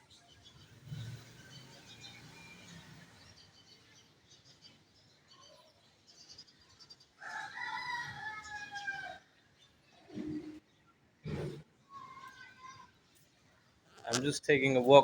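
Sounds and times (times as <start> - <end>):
small birds chirping: 0.0 - 15.0
rooster crowing: 7.2 - 9.2.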